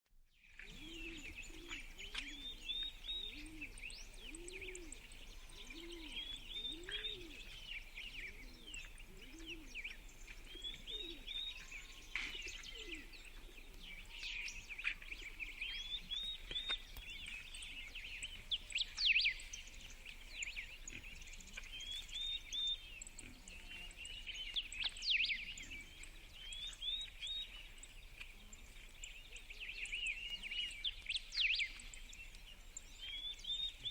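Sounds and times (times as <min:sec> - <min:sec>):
birds chirping and singing: 0:00.4 - 0:33.9
low bird call: 0:00.5 - 0:27.6.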